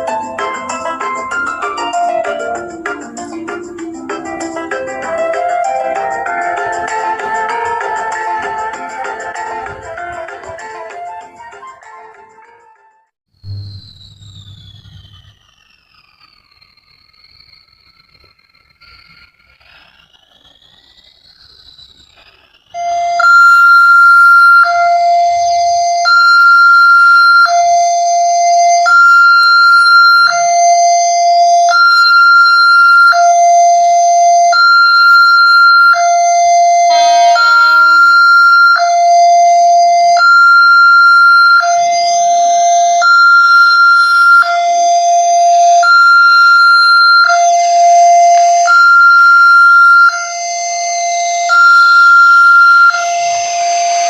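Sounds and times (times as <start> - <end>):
level crossing two-tone alarm: 22.7 - 54.0.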